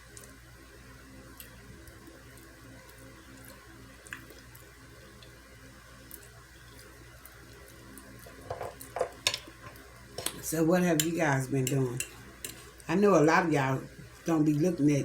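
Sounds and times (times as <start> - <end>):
low steady hum: 0.0 - 15.0
person chewing food: 1.3 - 5.4.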